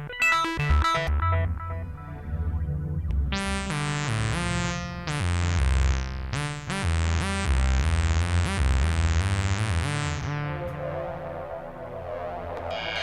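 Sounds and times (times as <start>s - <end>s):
buzzy synthesizer notes: 0.0s - 13.0s
pulsing synth bass line: 0.0s - 13.0s.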